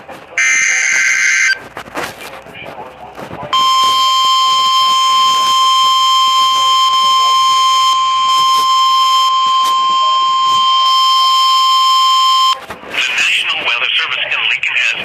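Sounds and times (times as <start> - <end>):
steady single alarm tone: 0.4 - 1.6, 3.6 - 12.6.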